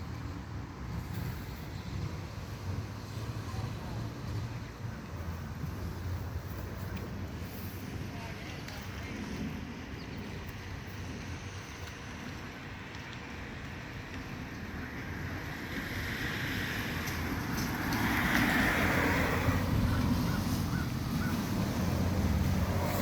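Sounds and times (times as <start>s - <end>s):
vehicle tyre hiss passing: 0.0s - 8.6s, 14.8s - 23.0s.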